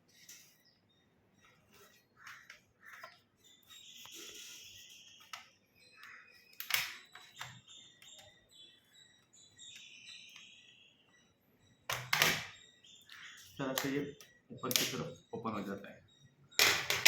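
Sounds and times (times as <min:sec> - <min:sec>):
plastic clips snapping: 0:06.6 - 0:07.5.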